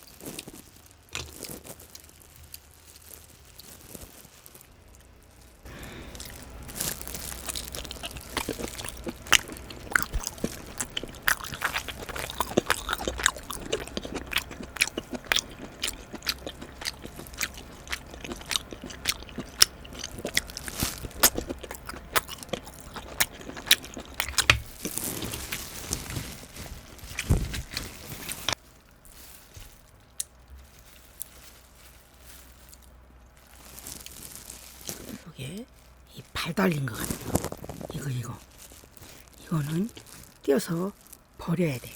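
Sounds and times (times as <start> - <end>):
close chewing with wet clicks: 6.2 - 25.2.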